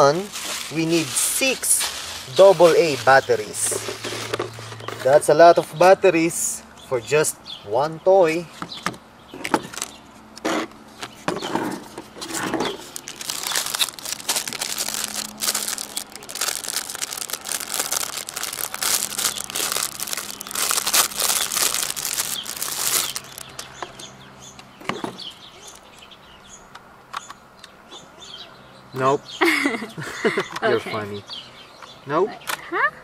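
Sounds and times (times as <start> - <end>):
packaging crinkling and rustling: 0.0 - 4.4, 12.2 - 23.7.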